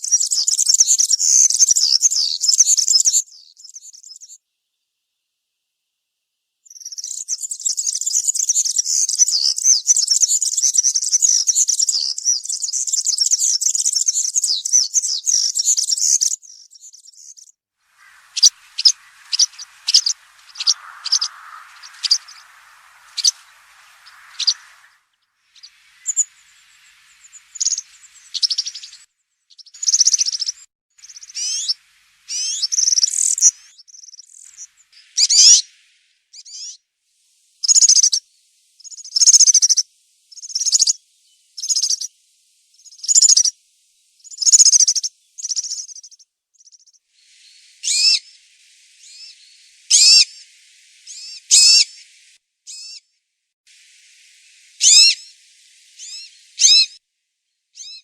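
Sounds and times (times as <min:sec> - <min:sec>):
short sharp bird notes: 0:18.0 - 0:29.1.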